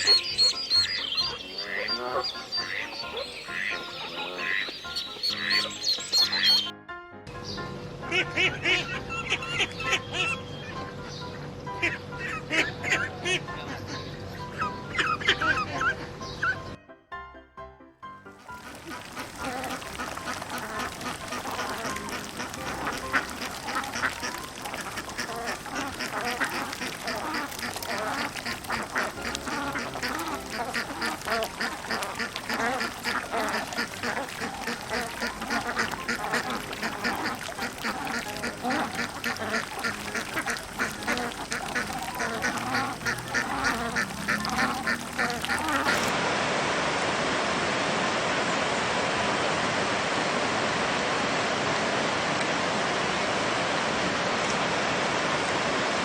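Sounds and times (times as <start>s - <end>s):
ducks quacking: 0.0s - 6.7s, 8.0s - 16.8s, 18.5s - 46.1s.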